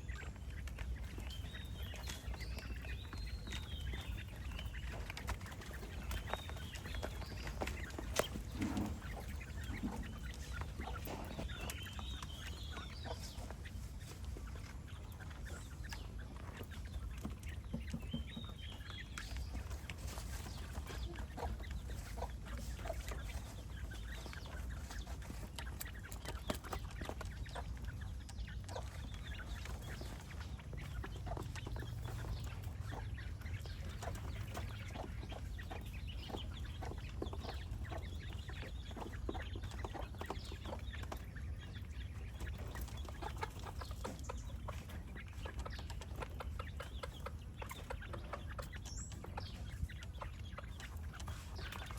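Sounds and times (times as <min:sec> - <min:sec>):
chickens clucking: 0:00.0 - 0:51.9.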